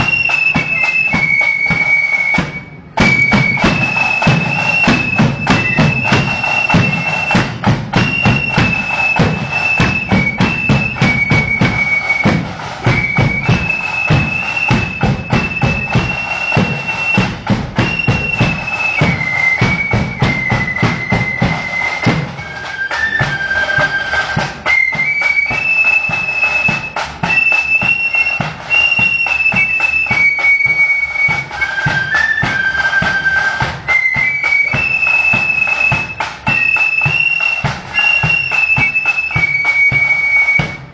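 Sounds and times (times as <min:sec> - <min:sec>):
side and bass drums: 0:00.0 - 0:32.6
flutes playing melody: 0:00.0 - 0:40.9.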